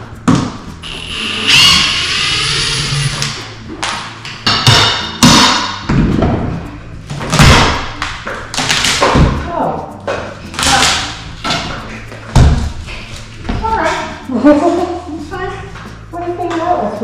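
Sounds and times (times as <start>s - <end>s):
creaking scrape: 0.7s - 3.6s
heavy knocks and thumps: 3.3s - 10.7s, 11.5s - 14.1s.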